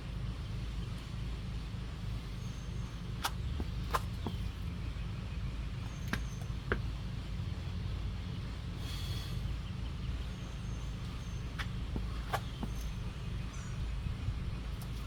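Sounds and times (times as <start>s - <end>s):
man breathing hard: 8.7s - 9.6s.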